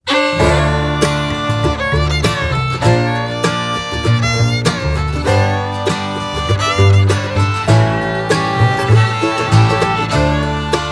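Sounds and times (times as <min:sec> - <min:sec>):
upbeat country music: 0:00.1 - 0:10.9.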